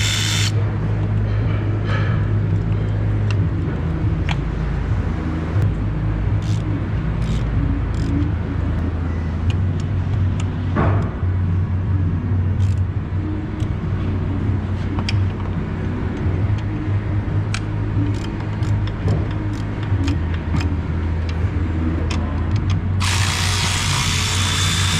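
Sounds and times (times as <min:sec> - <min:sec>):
car engine running: 0:16.0 - 0:24.9.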